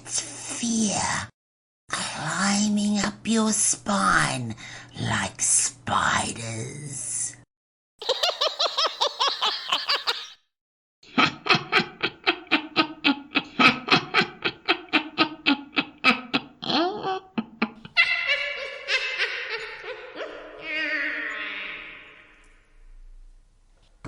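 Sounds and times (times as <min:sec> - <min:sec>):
woman cackling with effects: 0:14.2 - 0:22.2.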